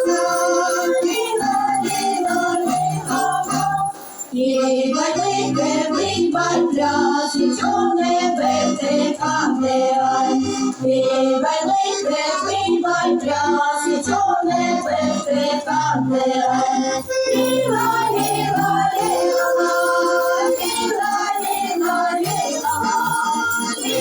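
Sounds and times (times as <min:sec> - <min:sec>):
instrumental accompaniment: 0:00.0 - 0:04.6, 0:16.9 - 0:24.0
vocal ensemble singing in chorus: 0:00.0 - 0:24.0.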